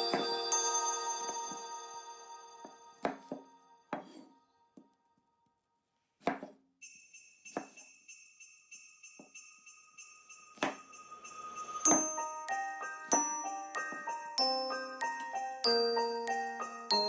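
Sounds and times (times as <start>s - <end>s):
jingle bells shaking: 0.0s - 2.7s, 6.8s - 17.0s
chiming bell tones: 0.0s - 3.9s, 6.8s - 17.0s.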